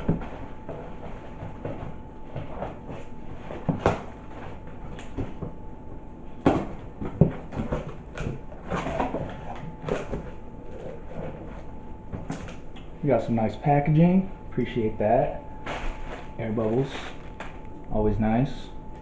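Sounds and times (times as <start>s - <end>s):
box rustling: 15.7s - 17.6s.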